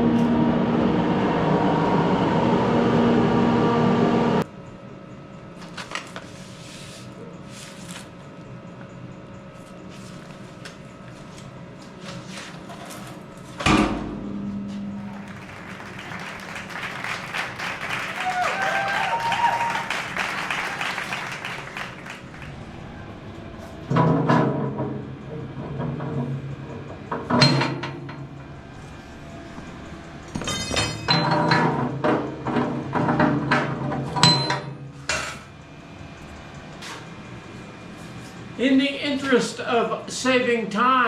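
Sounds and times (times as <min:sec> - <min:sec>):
steel pieces knocking and clanking: 0:30.4 - 0:31.9.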